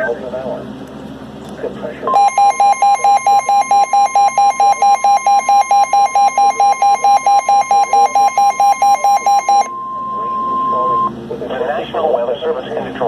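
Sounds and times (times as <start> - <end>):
rapid alarm beeps: 2.1 - 11.2
steady alert tone: 2.1 - 11.2.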